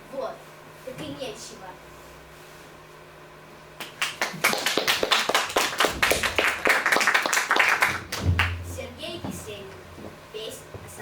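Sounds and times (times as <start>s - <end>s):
hands clapping: 3.8s - 8.6s.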